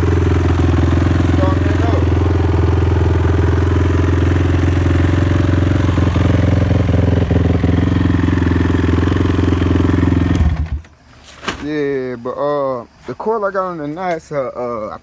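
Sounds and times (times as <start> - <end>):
quad engine running: 0.0 - 10.9.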